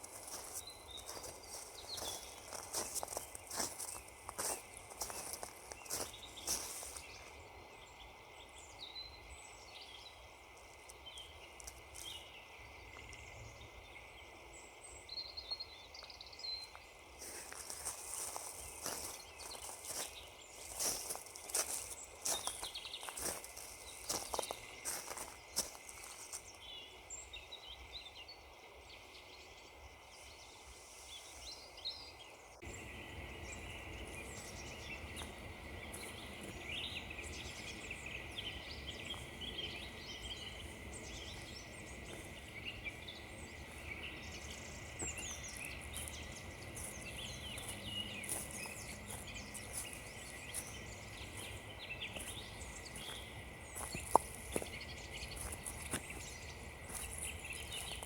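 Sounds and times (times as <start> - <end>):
small birds chirping: 0.0 - 58.0
background hiss: 29.9 - 58.0.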